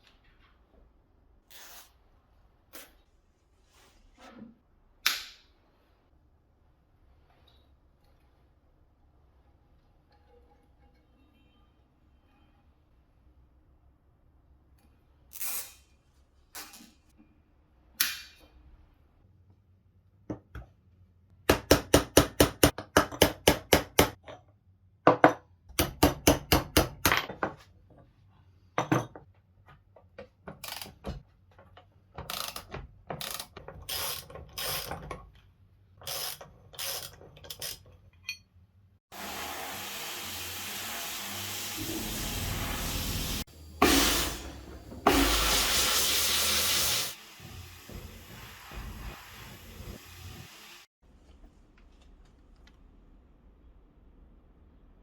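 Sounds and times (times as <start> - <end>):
ratchet wrench clicking: 36.0 - 37.8.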